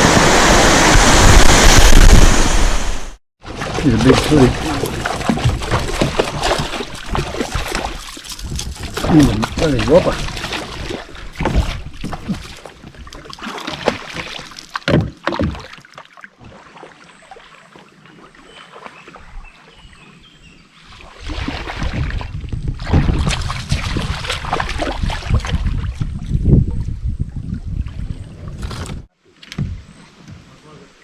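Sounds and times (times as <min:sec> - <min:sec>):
water splashing: 0:00.0 - 0:29.0
knocks against a canoe: 0:04.8 - 0:16.6, 0:21.8 - 0:24.0, 0:28.7 - 0:30.5.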